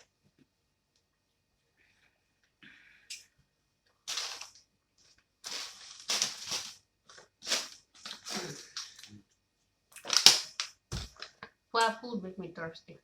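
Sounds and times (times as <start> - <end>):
crunching and chewing crispy food: 4.1 - 9.1, 9.9 - 11.4.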